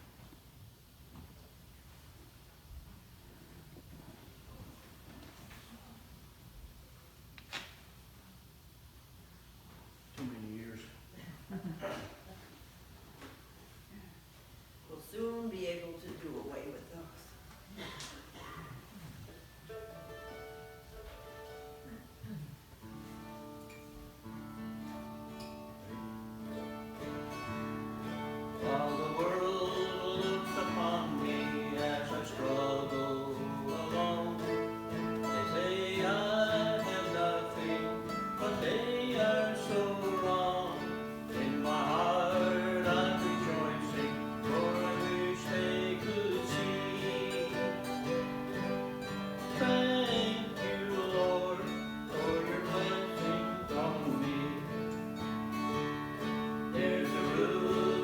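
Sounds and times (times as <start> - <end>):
acoustic guitar chords: 17.8 - 58.0
person singing: 28.6 - 48.5, 49.4 - 55.0, 56.6 - 58.0.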